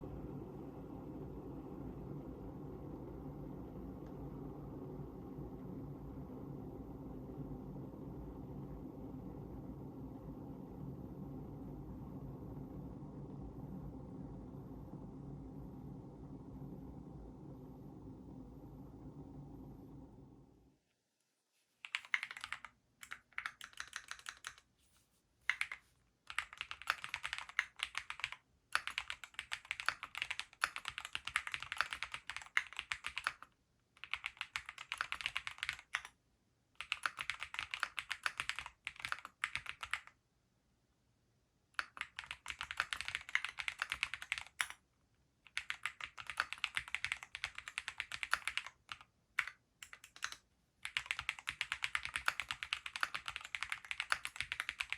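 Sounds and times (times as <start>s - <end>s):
mechanical keyboard typing: 21.8s - 24.7s, 25.5s - 36.2s, 36.8s - 40.2s, 41.8s - 44.8s, 45.5s - 54.9s.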